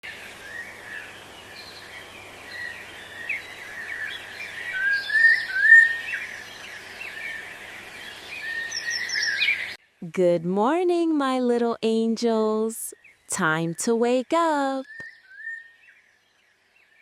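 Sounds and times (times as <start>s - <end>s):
birds chirping and singing: 0.4s - 9.8s.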